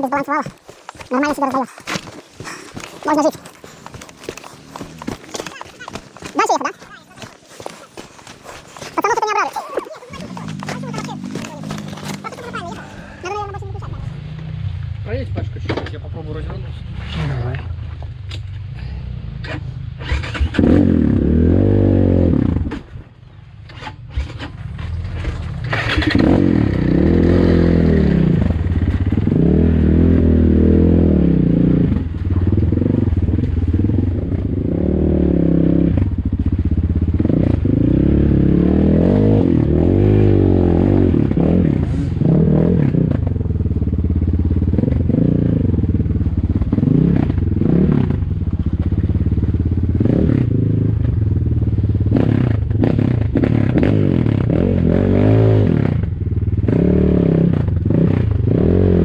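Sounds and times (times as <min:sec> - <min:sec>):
motorcycle engine revving: 0:16.5 - 0:22.9, 0:23.8 - 0:59.0.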